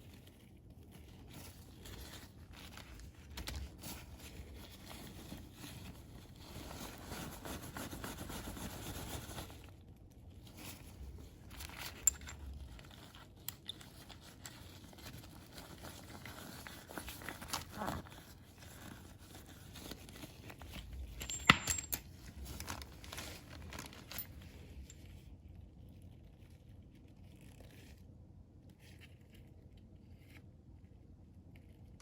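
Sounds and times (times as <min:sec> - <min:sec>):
hands scraping and rustling parts: 0:00.1 - 0:09.7, 0:10.4 - 0:25.2.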